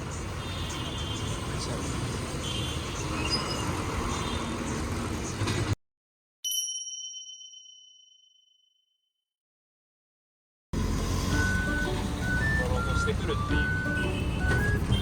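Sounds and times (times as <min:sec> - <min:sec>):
street traffic: 0:00.0 - 0:05.8, 0:10.8 - 0:15.0
bell-like ding: 0:06.4 - 0:08.9.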